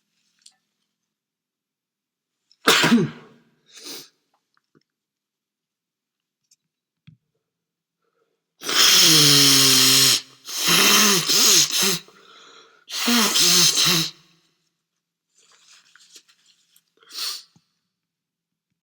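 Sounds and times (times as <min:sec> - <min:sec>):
man sneezing loudly: 0:02.7 - 0:04.0, 0:08.6 - 0:12.1, 0:12.9 - 0:14.2
short breath: 0:08.0 - 0:14.3
man gasping before sneezing: 0:08.6 - 0:14.2.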